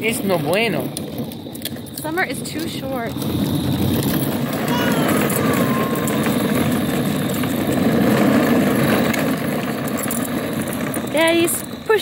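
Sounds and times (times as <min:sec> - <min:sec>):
plastic wheels rolling over pavement: 0:00.0 - 0:12.0
faint falling squeak: 0:04.6 - 0:07.1.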